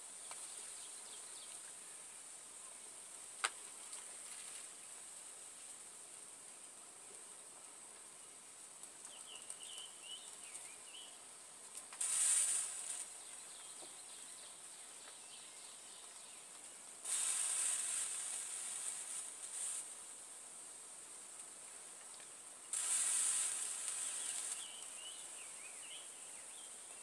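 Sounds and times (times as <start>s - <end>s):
faint steady hiss: 0.0s - 27.0s
small bird chirping: 9.0s - 11.3s, 12.0s - 19.8s, 22.1s - 27.0s
loud hissing bursts: 9.3s - 14.7s, 16.8s - 27.0s.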